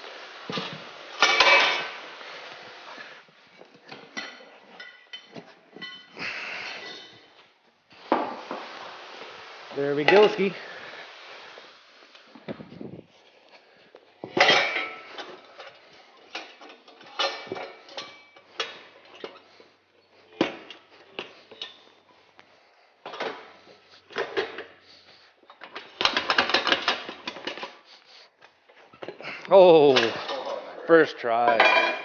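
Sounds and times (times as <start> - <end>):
metal tools clanking on wheel rim: 0.5 - 2.0, 3.6 - 6.2, 9.8 - 10.6, 14.2 - 22.3, 28.8 - 32.0.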